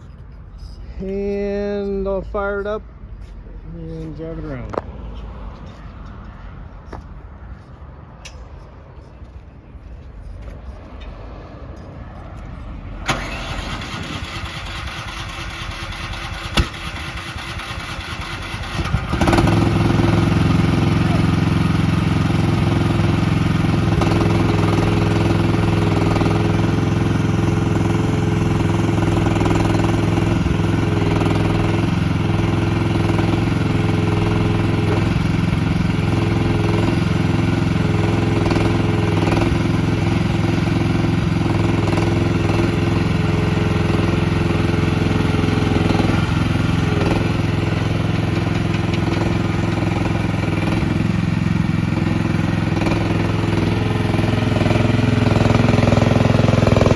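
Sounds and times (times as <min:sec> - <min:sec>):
excavator engine running: 0:12.9 - 0:56.9.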